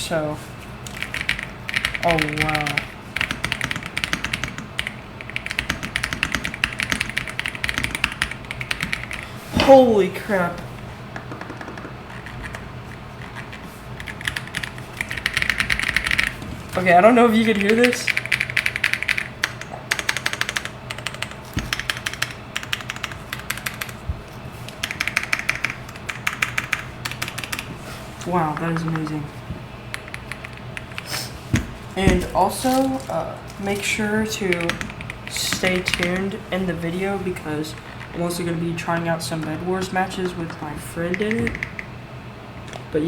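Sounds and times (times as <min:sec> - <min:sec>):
mechanical keyboard typing: 0:00.9 - 0:09.2, 0:11.2 - 0:12.6, 0:13.2 - 0:24.0, 0:24.8 - 0:27.7, 0:29.9 - 0:31.1, 0:33.7 - 0:36.3, 0:40.2 - 0:41.9
deep keyboard thuds: 0:18.8 - 0:27.7, 0:31.5 - 0:32.9.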